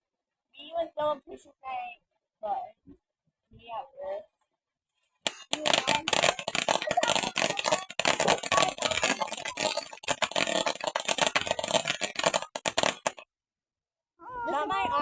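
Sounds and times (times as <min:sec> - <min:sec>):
firework crackling and hissing: 0:05.3 - 0:13.2.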